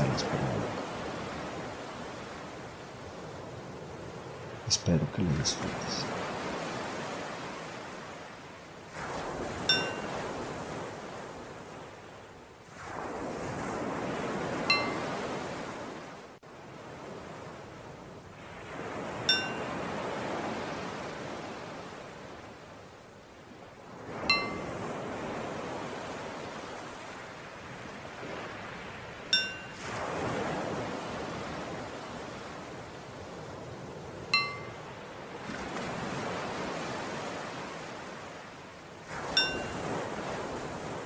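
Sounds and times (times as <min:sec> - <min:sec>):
ocean waves washing: 0:00.0 - 0:41.0
bell ringing: 0:09.7 - 0:10.1, 0:24.3 - 0:24.7, 0:29.3 - 0:29.7, 0:34.4 - 0:34.8, 0:39.4 - 0:39.7.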